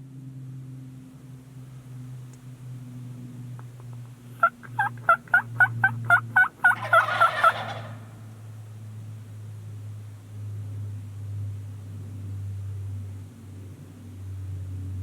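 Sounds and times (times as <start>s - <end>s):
low steady hum: 0.0s - 15.0s
turkey calling: 3.6s - 8.2s
turkey gobble: 3.6s - 8.3s.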